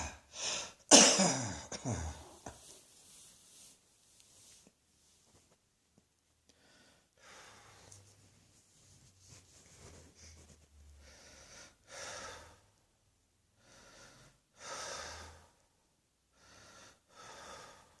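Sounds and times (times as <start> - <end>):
person breathing: 0.0 - 0.9, 6.5 - 8.3, 9.6 - 12.8, 13.6 - 18.0.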